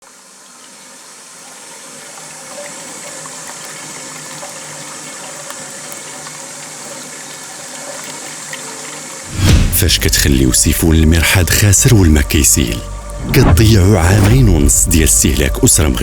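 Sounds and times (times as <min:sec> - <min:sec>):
water running into toilet bowl: 0:00.2 - 0:09.3.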